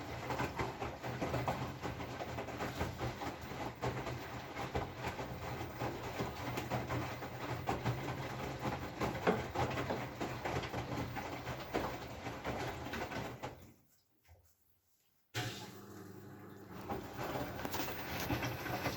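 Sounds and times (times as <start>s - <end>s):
washing machine humming: 0.0s - 14.0s, 15.4s - 18.9s
crackling rattle: 17.2s - 18.9s.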